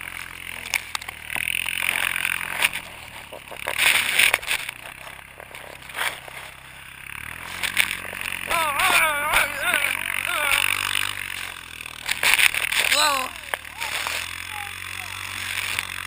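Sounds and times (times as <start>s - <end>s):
atv engine drone: 0.0s - 16.0s.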